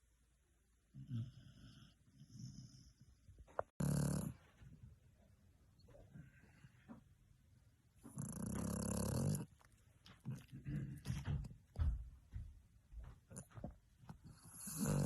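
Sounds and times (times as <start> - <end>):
dog snoring: 0.9 - 3.2, 3.8 - 4.6, 8.0 - 11.5, 13.3 - 15.0
dog snorting: 3.8 - 4.5, 8.0 - 11.9, 13.3 - 15.0.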